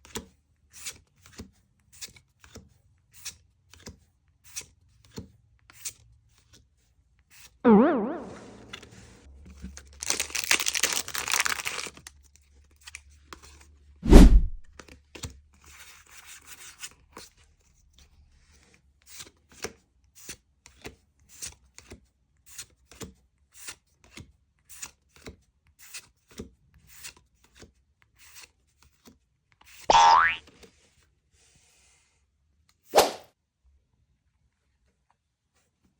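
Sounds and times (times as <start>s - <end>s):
loud thump: 7.7s - 9.0s, 14.0s - 14.7s
foil pack tearing: 10.0s - 12.0s.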